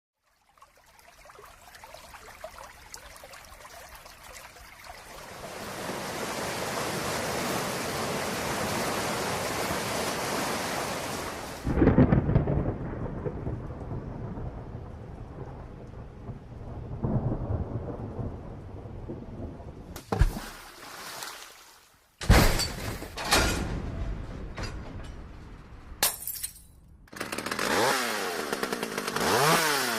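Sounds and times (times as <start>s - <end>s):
steady rain: 0.7s - 20.0s
thunderclap and rolling thunder: 11.6s - 20.0s.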